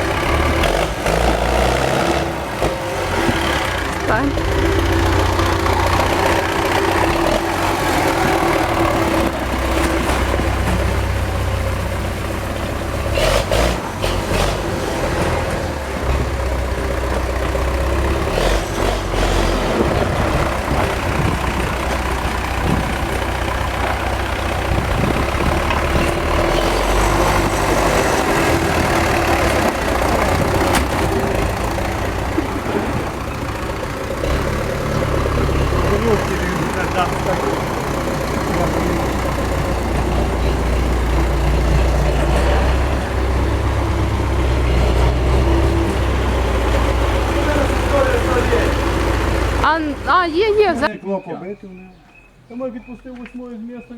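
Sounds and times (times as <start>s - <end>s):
engine knocks: 0.0s - 51.0s
tractor diesel engine running: 0.0s - 53.9s.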